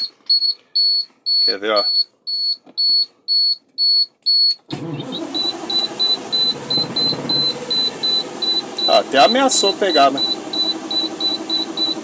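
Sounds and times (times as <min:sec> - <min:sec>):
dashboard warning beep: 0:00.0 - 0:12.0
diesel engine cranking: 0:04.7 - 0:12.0.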